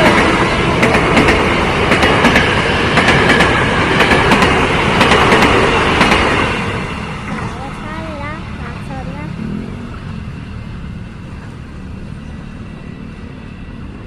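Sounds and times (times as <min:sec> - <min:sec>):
train wheels clattering: 0:00.0 - 0:10.1.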